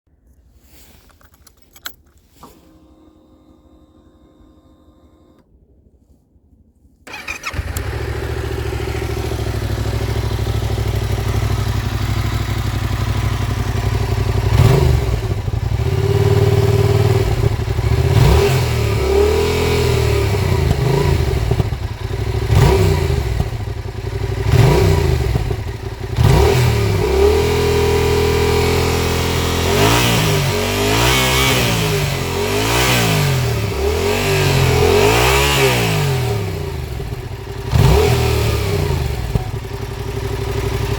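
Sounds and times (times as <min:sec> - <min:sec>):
motorcycle engine idling and revving: 0:07.1 - 0:40.9.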